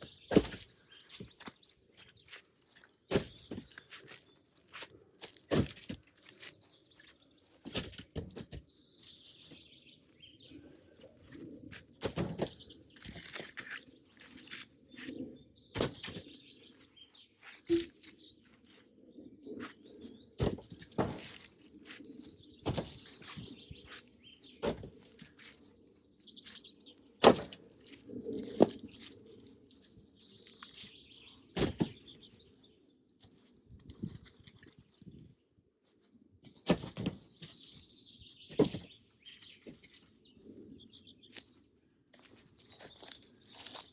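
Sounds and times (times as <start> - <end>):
birds chirping: 0.0 - 35.3, 35.9 - 43.9.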